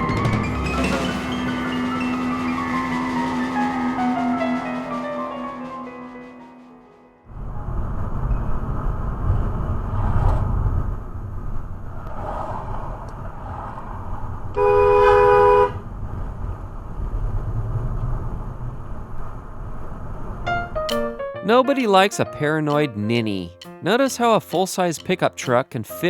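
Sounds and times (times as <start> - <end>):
car horn blast: 14.6 - 15.8.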